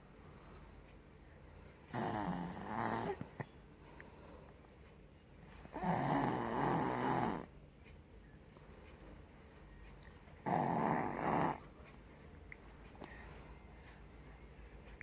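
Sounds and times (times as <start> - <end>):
person snoring: 1.9 - 3.2, 5.7 - 7.5, 10.4 - 11.6.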